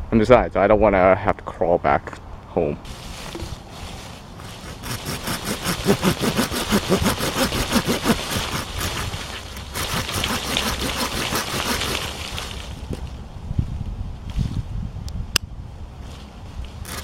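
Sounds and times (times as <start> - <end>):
hand saw cutting wood: 4.4 - 12.8.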